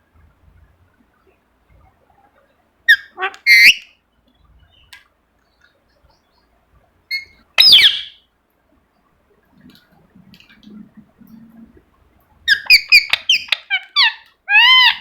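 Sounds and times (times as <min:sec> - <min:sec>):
parrot chirping: 0:02.9 - 0:03.9, 0:07.1 - 0:08.2, 0:12.5 - 0:15.0.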